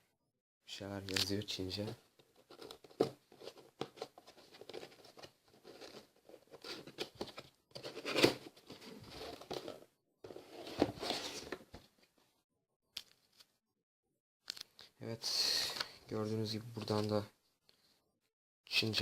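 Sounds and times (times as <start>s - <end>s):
cardboard and paper rustling: 1.8s - 12.0s.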